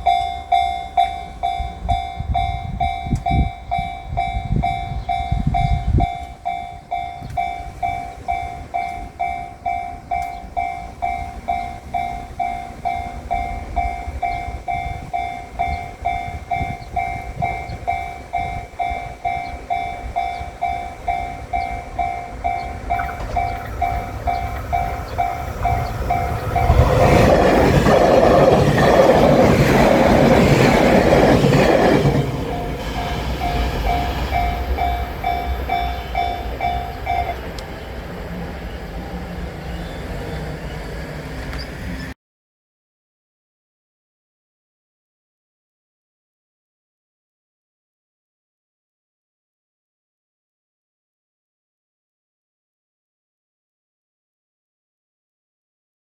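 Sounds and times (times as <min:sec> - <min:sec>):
crossing warning bell ringing: 0:00.0 - 0:42.1
train passing rumble: 0:00.0 - 0:42.2.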